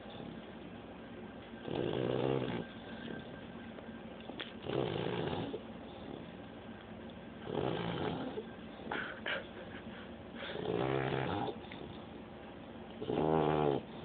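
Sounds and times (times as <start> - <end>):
puppy snoring: 1.6 - 3.4, 4.6 - 6.4, 7.4 - 8.5, 10.4 - 12.0, 13.0 - 14.0.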